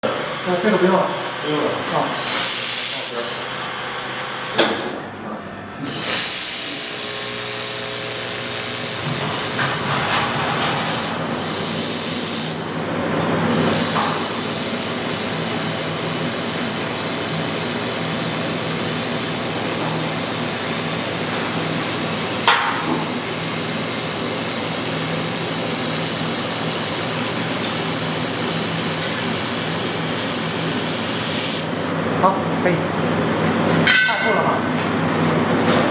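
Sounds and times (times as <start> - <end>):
welding gun hissing: 1.3 - 4.7, 5.9 - 12.9, 13.6 - 31.9.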